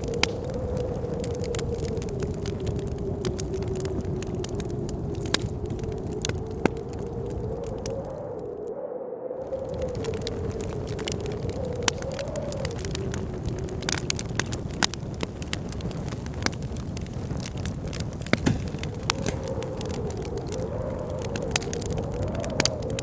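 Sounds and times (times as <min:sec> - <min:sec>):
wood fire crackling and popping: 0:00.0 - 0:08.6, 0:09.4 - 0:23.0
blizzard wind howling: 0:00.0 - 0:23.0.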